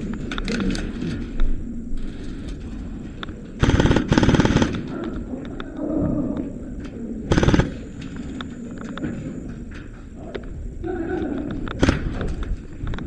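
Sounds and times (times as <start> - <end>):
airsoft rifles firing bursts: 3.6 - 5.1, 7.3 - 9.3, 11.8 - 12.4.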